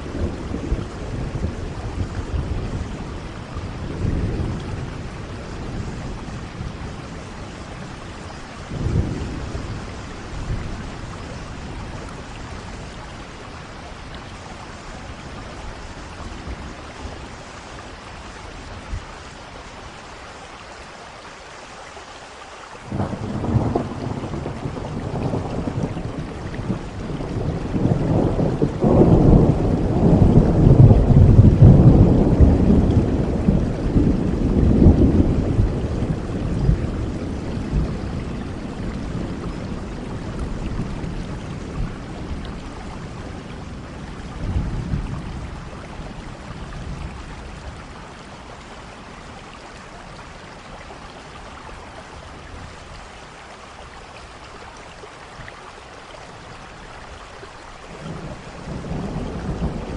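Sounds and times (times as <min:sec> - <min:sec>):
rolling thunder: 0:00.0 - 0:13.5, 0:22.9 - 0:48.0, 0:58.0 - 0:59.9
steady rain: 0:00.0 - 0:59.9
thunder clap: 0:22.9 - 0:45.2.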